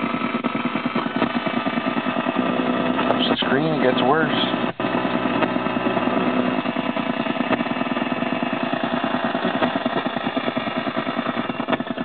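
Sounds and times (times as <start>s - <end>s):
buzzing interference from speakers: 0.0s - 8.0s.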